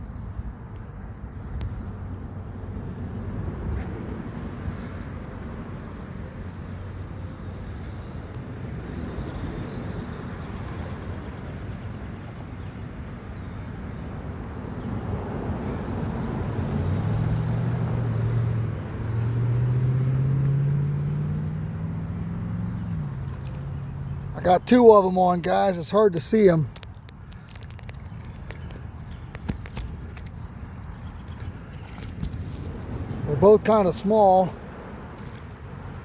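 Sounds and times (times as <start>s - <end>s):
motor engine humming: 16.1s - 34.5s.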